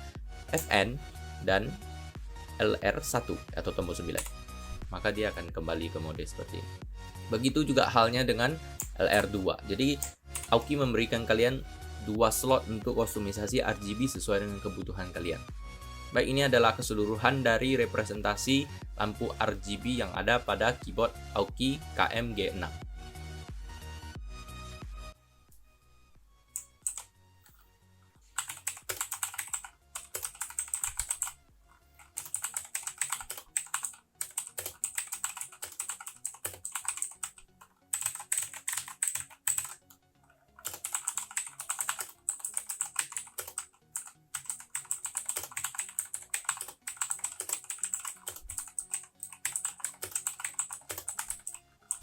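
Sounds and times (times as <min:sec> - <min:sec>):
mechanical keyboard typing: 0:26.6 - 0:27.1, 0:28.4 - 0:31.4, 0:32.0 - 0:39.8, 0:40.6 - 0:52.0.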